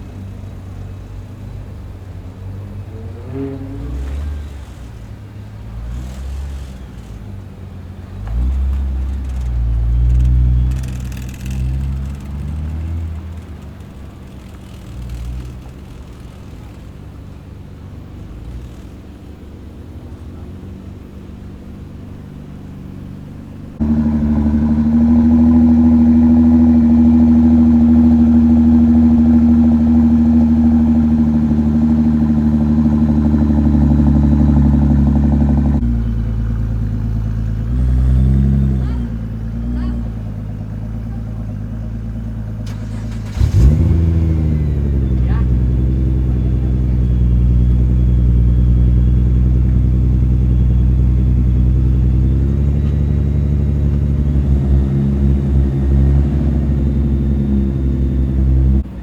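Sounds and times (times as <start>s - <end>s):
car engines revving: 0.0s - 59.0s
loud engine drone: 23.8s - 59.0s.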